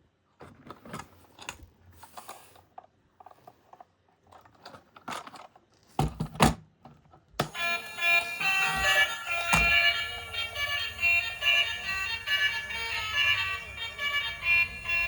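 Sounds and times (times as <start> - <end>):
plastic toys clicking and rattling: 0.6 - 5.9
music: 7.5 - 15.0.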